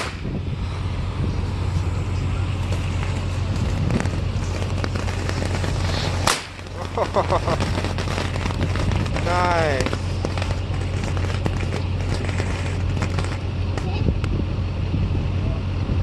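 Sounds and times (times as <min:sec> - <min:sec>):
sharp bang: 0:00.0 - 0:00.4, 0:06.1 - 0:06.6
fireworks hissing: 0:00.0 - 0:13.9
wind rumbling on microphone: 0:00.0 - 0:16.0
small pops: 0:03.8 - 0:13.9.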